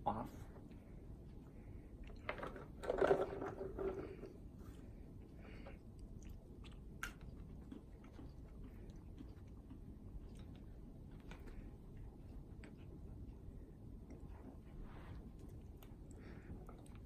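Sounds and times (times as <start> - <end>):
dog sniffing and snuffling: 14.2 - 17.0.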